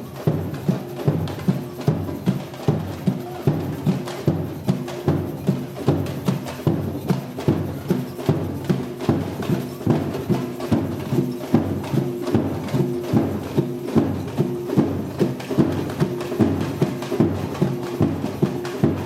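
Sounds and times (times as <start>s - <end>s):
deep samba drums: 0.0s - 19.0s.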